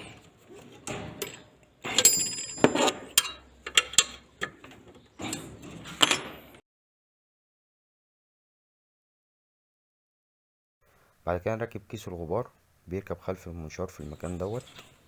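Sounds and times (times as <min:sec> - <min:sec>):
ringing metallic clink: 0:02.0 - 0:03.4.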